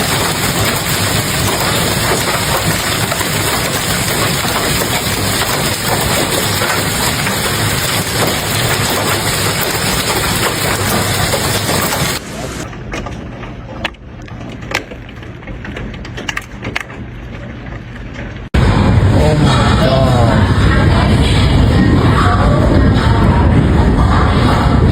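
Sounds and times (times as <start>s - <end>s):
hail clattering: 0.0s - 12.7s.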